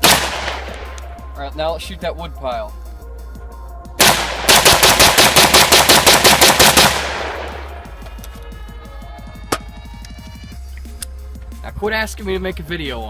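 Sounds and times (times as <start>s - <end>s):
rapid gunshots with echo: 0.0s - 1.0s, 4.0s - 7.9s.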